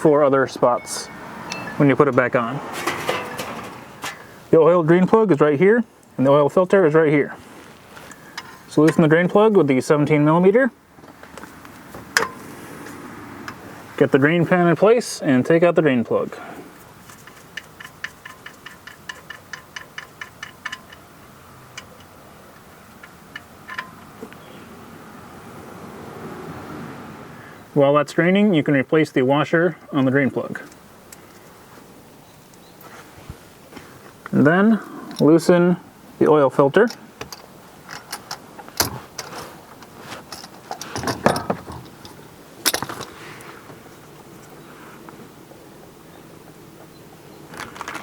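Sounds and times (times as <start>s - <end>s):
ratchet wrench clicking: 17.2s - 21.0s.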